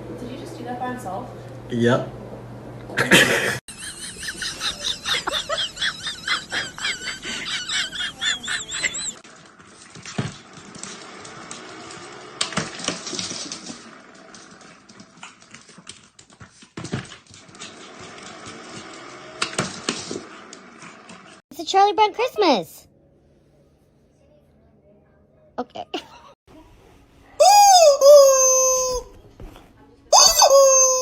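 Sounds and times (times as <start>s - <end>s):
dog yipping: 30.2s - 31.0s.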